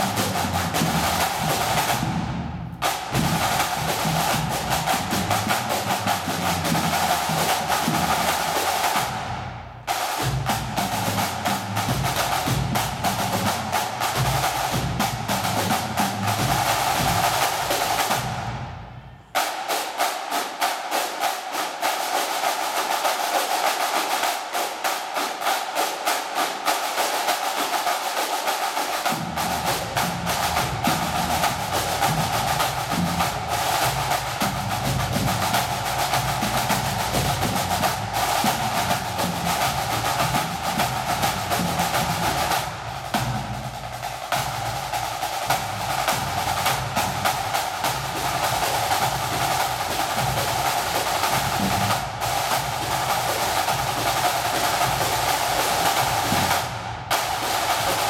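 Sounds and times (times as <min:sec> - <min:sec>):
bass and tenor drums: 0:00.0 - 0:19.0, 0:29.1 - 0:58.0
snare drum rolls: 0:00.0 - 0:58.0.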